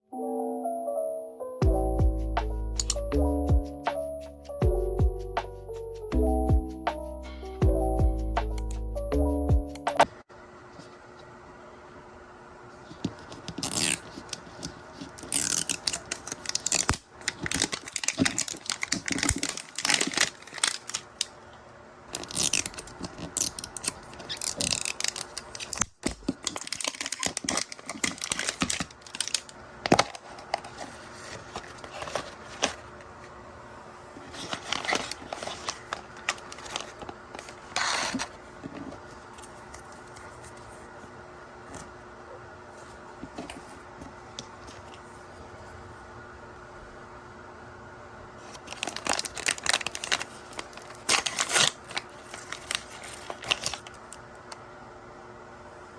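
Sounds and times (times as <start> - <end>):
crinkly plastic packaging torn: 13.2 - 21.3, 22.1 - 32.8, 34.3 - 38.4, 48.4 - 54.2.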